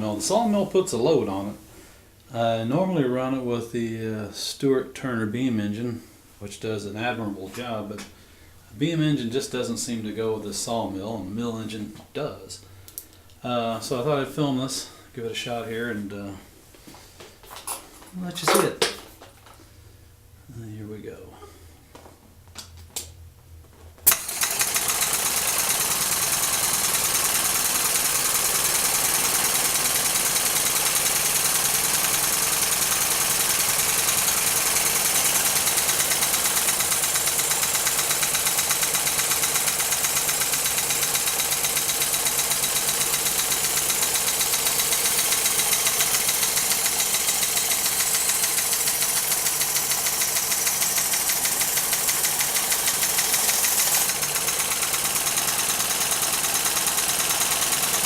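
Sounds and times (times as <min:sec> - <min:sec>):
model steam engine running: 0:24.1 - 0:58.0.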